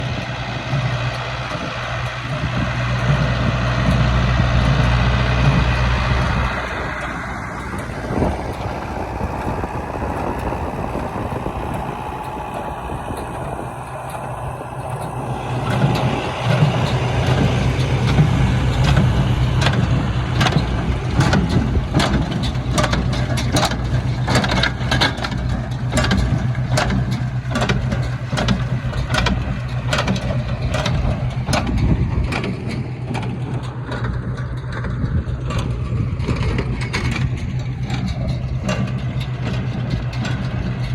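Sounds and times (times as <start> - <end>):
tractor engine working hard: 0.0 - 40.9.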